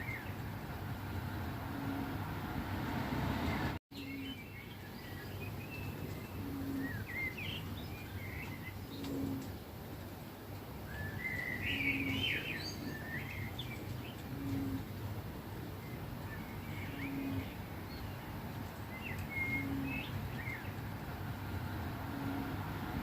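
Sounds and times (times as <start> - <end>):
small birds chirping: 0.0 - 2.3, 3.4 - 23.0
low steady hoot: 6.4 - 7.3, 9.0 - 9.5, 14.2 - 15.0, 16.9 - 17.6, 19.3 - 20.2.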